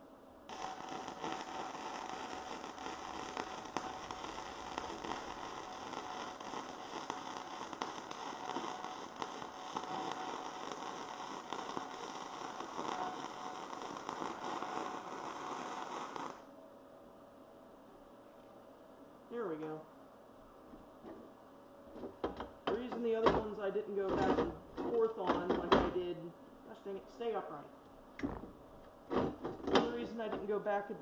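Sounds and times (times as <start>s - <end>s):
crackling welding arc: 0.0s - 16.5s, 29.8s - 30.7s
faint steady hum: 0.0s - 31.0s.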